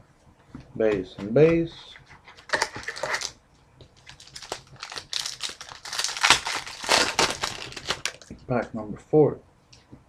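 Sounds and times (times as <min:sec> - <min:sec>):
foil wrapper crinkling: 0:02.3 - 0:03.3, 0:04.0 - 0:08.3.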